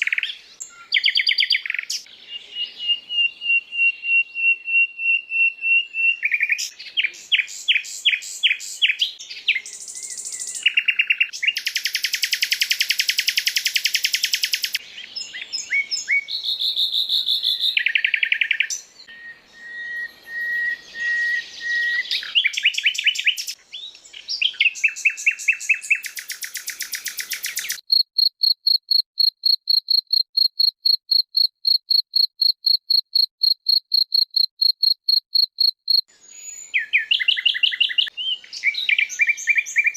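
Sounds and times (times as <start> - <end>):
songbird calls: 0.0 - 27.9, 35.9 - 39.9.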